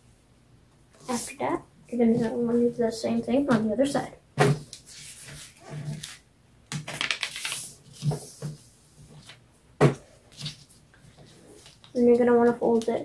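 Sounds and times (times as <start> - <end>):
paper rustling and sliding: 4.6 - 6.2, 7.0 - 9.4.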